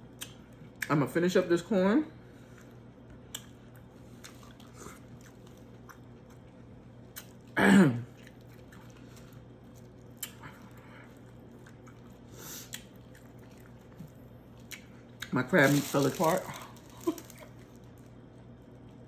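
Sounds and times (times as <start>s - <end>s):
chewing and biting corn: 2.6s - 7.6s, 8.2s - 18.0s.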